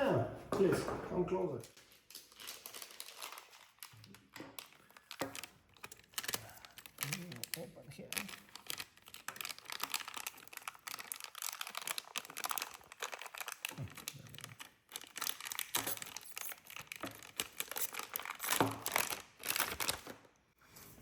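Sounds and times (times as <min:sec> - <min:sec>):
handling knocks: 0:00.0 - 0:01.5
packaging crinkling: 0:01.7 - 0:20.4.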